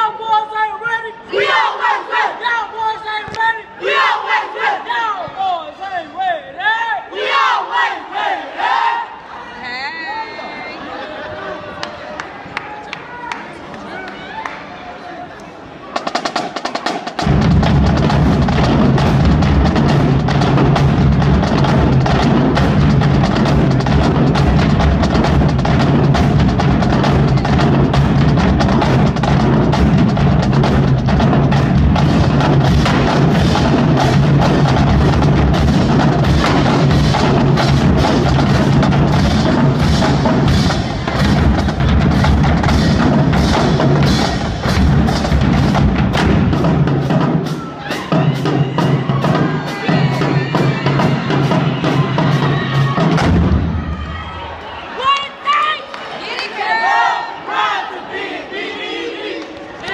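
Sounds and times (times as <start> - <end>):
marching drumline cadence: 0.0 - 9.3, 15.8 - 59.9
deep bass drums: 17.2 - 47.4.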